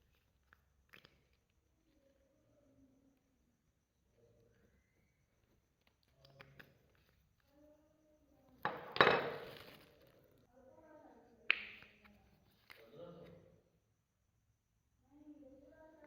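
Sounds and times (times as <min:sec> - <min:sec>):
hands slapping slime: 0:11.5 - 0:12.1.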